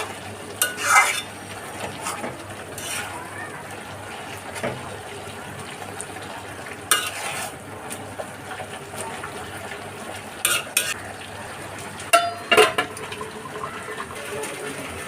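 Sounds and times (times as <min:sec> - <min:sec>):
food frying hiss: 0:00.0 - 0:15.0
metal spoon clinking in pot: 0:00.6 - 0:01.3, 0:12.1 - 0:12.8.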